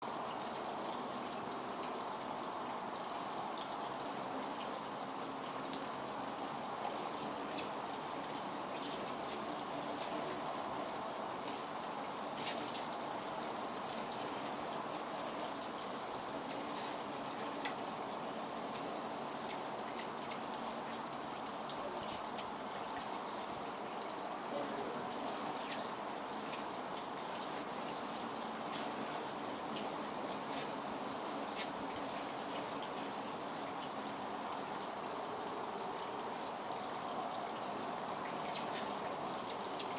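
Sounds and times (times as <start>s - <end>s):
insects trilling: 4.4s - 34.9s, 37.6s - 39.9s
hummingbird chips: 4.6s - 34.9s, 37.6s - 39.9s
sharp squeaky chirps: 7.1s - 7.8s, 8.6s - 11.6s, 24.5s - 26.6s, 37.8s - 39.9s.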